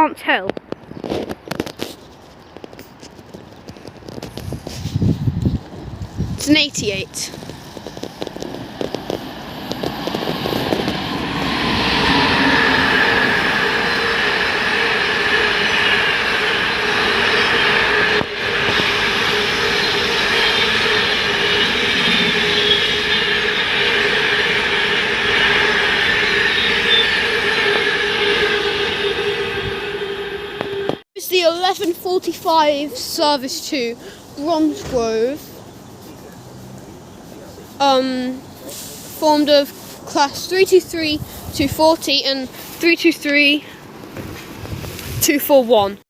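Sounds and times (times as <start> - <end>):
freight train rumbling: 4.4 - 31.8
train whining tone: 6.4 - 31.6.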